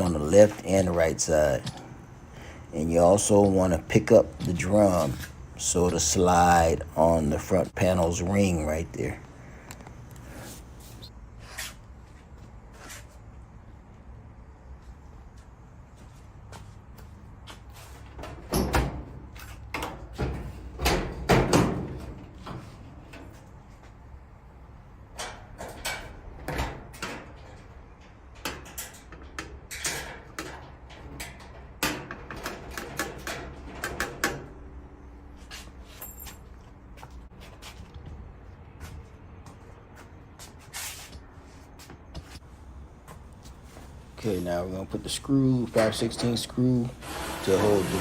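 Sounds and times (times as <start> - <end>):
sheet metal clunks and knocks: 19.7 - 22.6.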